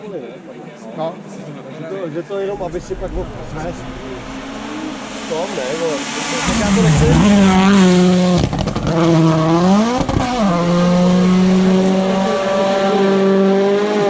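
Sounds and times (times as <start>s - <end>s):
exhaust crackles: 2.5s - 8.8s.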